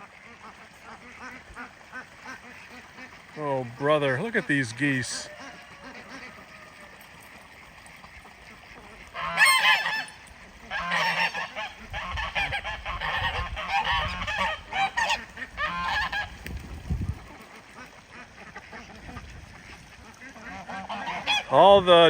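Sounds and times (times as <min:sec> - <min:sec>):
geese honking: 0:00.0 - 0:16.4, 0:17.2 - 0:21.8.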